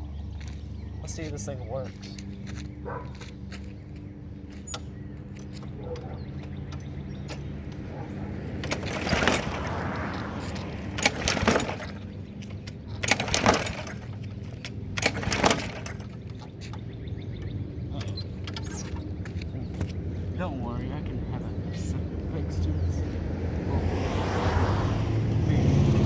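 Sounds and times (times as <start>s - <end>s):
mower recoil starter pulls: 4.6s - 19.5s.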